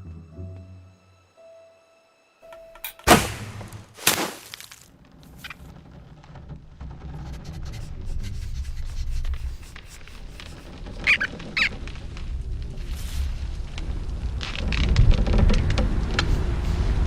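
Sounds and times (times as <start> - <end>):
loud impacts: 2.8 - 4.9.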